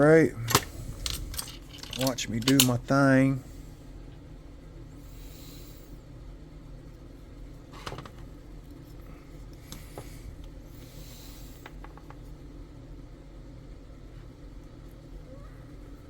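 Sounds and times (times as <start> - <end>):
steady low hum: 0.0 - 16.0
tools clicking and tapping: 0.5 - 2.8.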